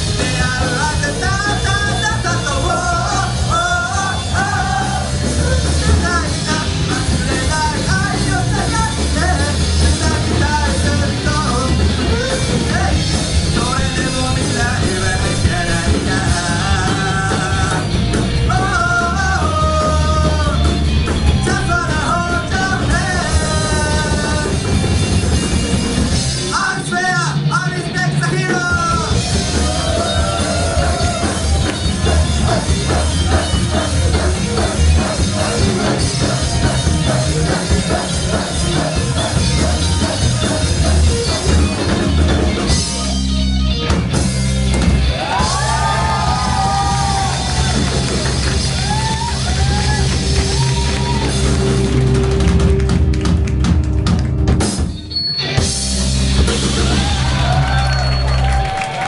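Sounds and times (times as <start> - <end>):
rock band playing: 0.0 - 59.0
person singing: 0.1 - 24.9.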